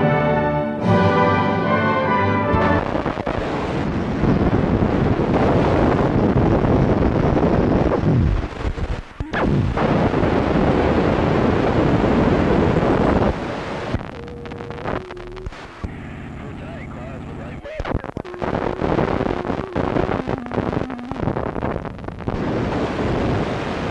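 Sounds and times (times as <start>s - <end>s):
explosion rumble: 2.6s - 14.1s
faint steady tone: 12.1s - 22.9s.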